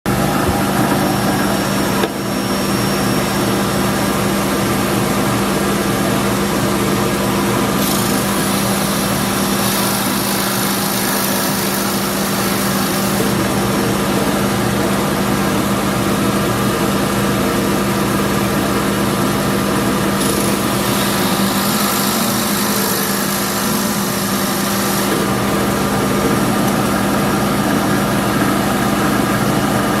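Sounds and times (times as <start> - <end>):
power tool cutting wood: 7.1 - 14.4, 19.8 - 28.2.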